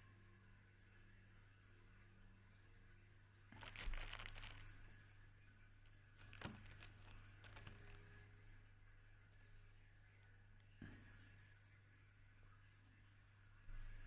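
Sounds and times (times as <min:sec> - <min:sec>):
packaging rustling: 0:03.6 - 0:04.7, 0:06.2 - 0:08.1
packaging crinkling: 0:03.6 - 0:04.8, 0:06.2 - 0:08.2.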